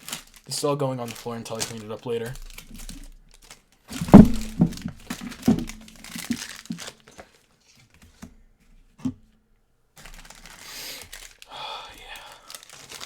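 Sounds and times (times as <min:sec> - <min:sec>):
plastic and foil wrappers crinkling: 0:00.0 - 0:08.2, 0:10.0 - 0:13.0
thump: 0:04.0 - 0:05.8.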